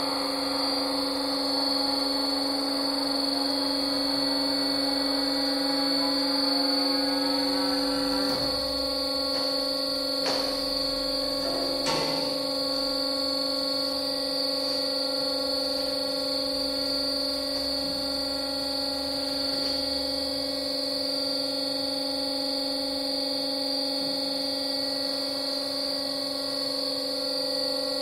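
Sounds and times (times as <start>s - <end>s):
band saw running: 0.0s - 26.8s.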